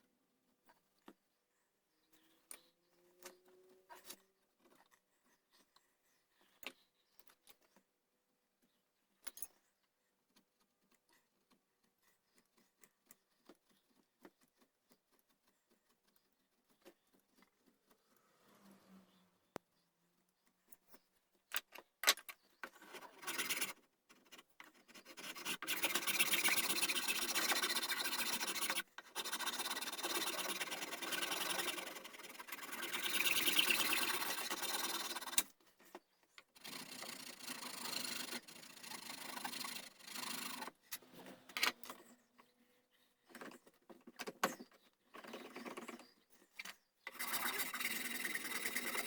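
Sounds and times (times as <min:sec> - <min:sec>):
hand tool rasping wood: 0:22.9 - 0:35.5, 0:36.6 - 0:40.7, 0:47.1 - 0:49.0.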